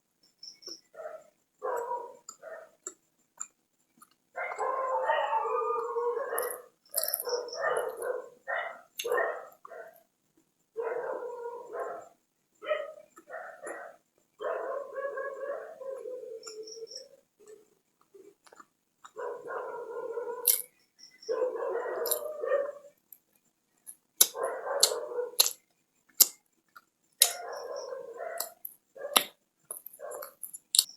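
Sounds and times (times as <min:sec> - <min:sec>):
dog barking and howling: 0:00.9 - 0:02.8, 0:04.4 - 0:10.0, 0:10.8 - 0:17.7, 0:19.1 - 0:20.6, 0:21.3 - 0:23.0, 0:24.3 - 0:25.6, 0:27.2 - 0:29.4, 0:30.0 - 0:30.4.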